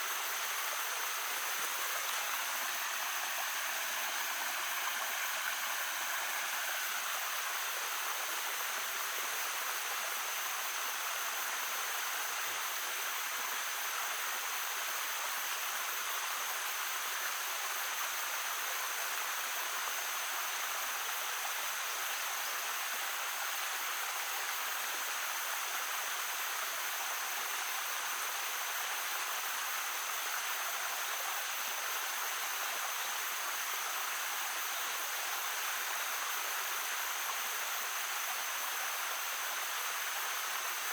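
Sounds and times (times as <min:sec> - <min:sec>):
stream babbling over stones: 0:00.0 - 0:10.8.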